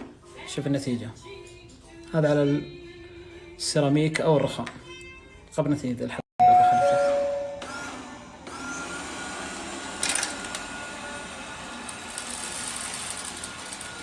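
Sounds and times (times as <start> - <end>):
robot vacuum cleaner running: 7.6 - 14.0.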